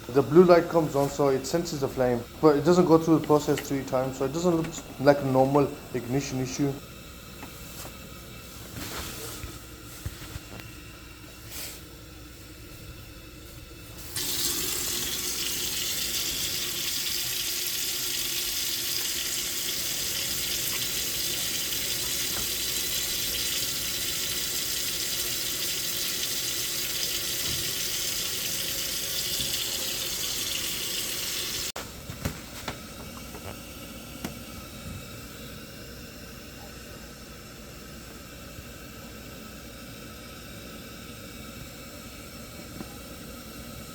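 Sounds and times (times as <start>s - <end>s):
water running from a tap: 14.1s - 31.8s.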